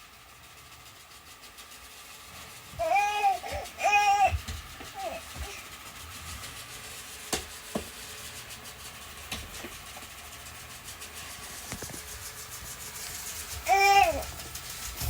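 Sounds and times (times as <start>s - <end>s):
brushes rubbing on floor: 1.8s - 15.0s
robot vacuum motor whirring: 2.8s - 5.6s, 11.6s - 15.0s.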